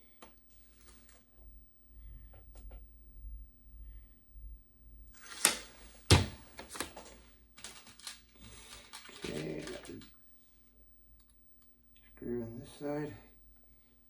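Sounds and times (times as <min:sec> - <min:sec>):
tools clicking and rattling: 0:07.6 - 0:10.0.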